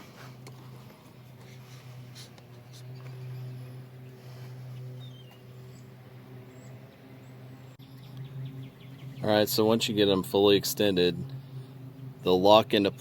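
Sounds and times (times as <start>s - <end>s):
steady low hum: 0.0s - 13.0s
bird chirping: 4.8s - 10.4s.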